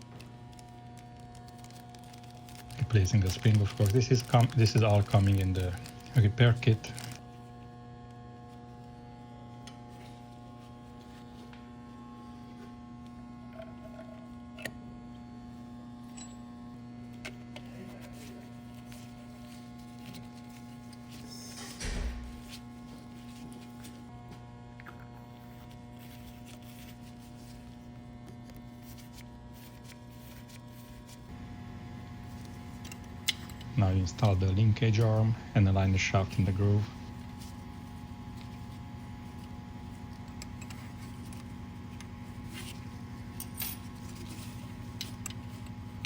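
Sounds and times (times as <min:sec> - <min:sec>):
electrical mains hum: 0:00.0 - 0:46.0.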